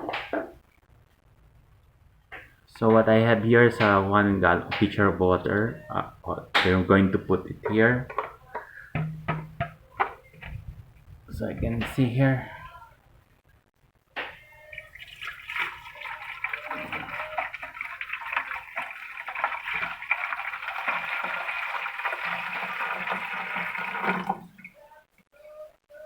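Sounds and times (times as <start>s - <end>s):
water pouring into a tank: 14.6s - 24.8s.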